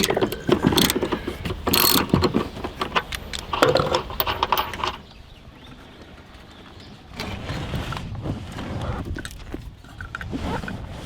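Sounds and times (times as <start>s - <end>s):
socket ratchet clicking: 0.0s - 5.0s.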